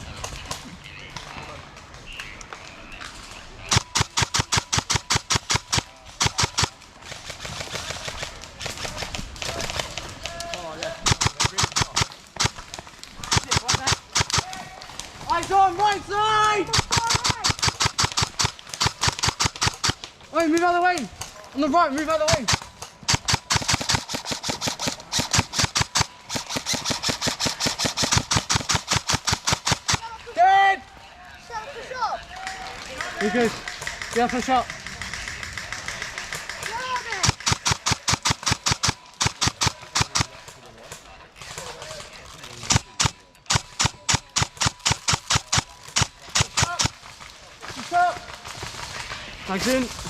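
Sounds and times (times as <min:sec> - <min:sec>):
airsoft gun rapid shots: 0:03.7 - 0:10.0, 0:11.0 - 0:12.6, 0:13.2 - 0:14.6, 0:16.7 - 0:20.6, 0:22.1 - 0:30.1, 0:33.2 - 0:40.4, 0:42.7 - 0:47.0.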